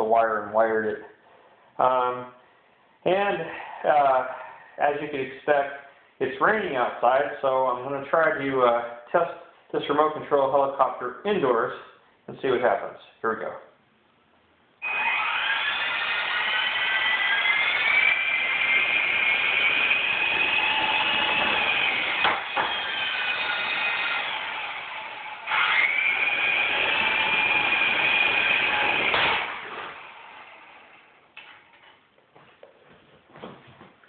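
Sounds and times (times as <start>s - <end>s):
toy helicopter motor whining: 14.8s - 31.2s.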